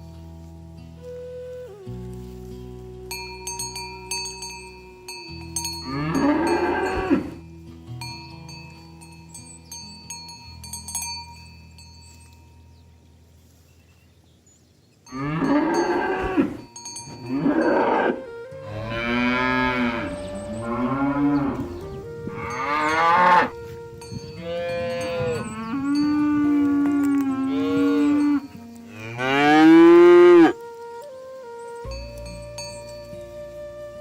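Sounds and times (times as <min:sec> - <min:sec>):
faint chime-like tones: 0:03.1 - 0:13.0, 0:15.0 - 0:17.8, 0:24.0 - 0:26.5
cattle mooing: 0:05.8 - 0:07.4, 0:15.1 - 0:23.7, 0:24.4 - 0:30.6.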